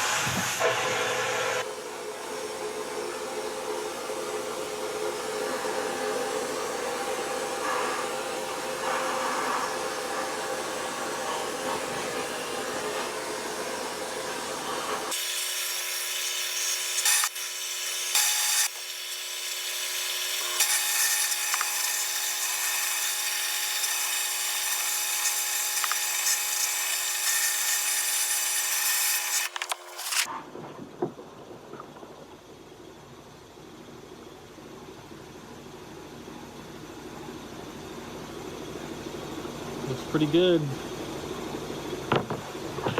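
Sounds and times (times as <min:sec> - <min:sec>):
low machine rumble: 0:30.3 - 0:42.9.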